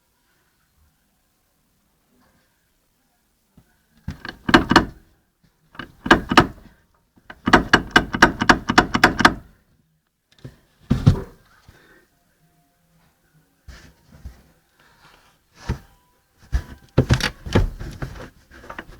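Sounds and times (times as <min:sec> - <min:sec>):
wheel knocking: 0:04.1 - 0:05.0, 0:05.8 - 0:06.7, 0:07.3 - 0:09.5.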